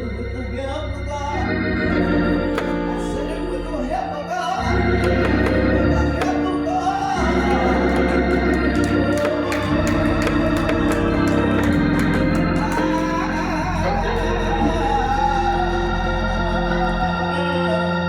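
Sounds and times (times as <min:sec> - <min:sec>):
church organ chords: 0:00.0 - 0:18.0.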